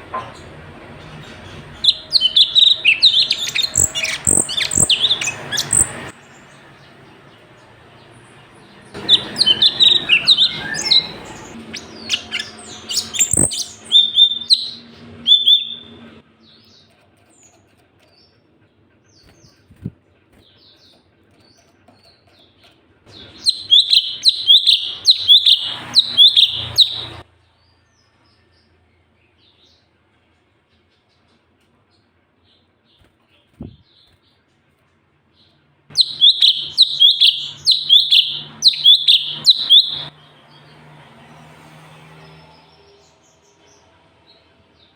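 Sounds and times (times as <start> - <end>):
bird singing gliding chirps: 0.0 - 18.3, 19.1 - 29.9, 35.4 - 44.9.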